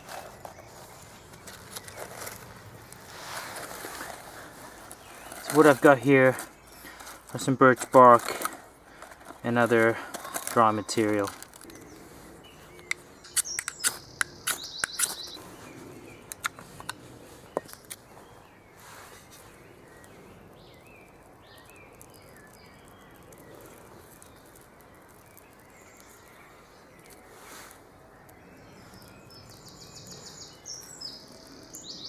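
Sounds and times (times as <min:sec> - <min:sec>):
small birds chirping: 0:00.0 - 0:32.0
bark and kindling crackling: 0:19.3 - 0:28.4.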